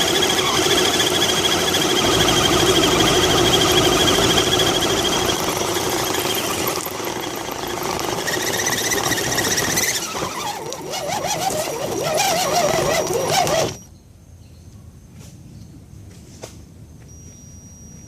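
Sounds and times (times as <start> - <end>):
toy car electric motor whining: 0.0 - 13.9.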